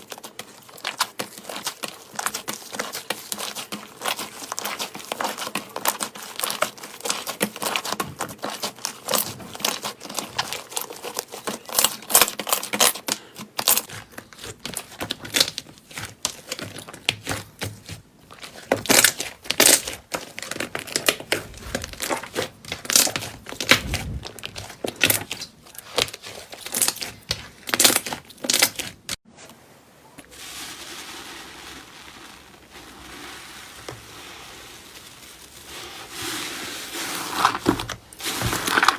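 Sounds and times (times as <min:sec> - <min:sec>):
slime crackling and popping: 0:18.8 - 0:29.2
soft hiss-like rustle: 0:29.4 - 0:38.8.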